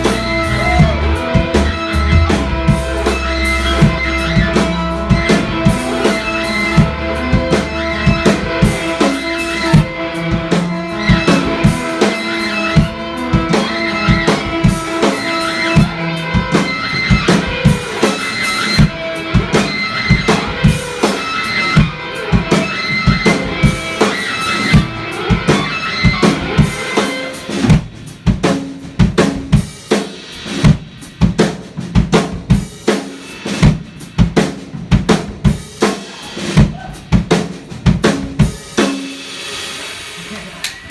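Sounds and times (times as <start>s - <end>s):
electric guitar playing: 0.0s - 27.6s
drum kit kick and snare beat: 0.0s - 40.9s.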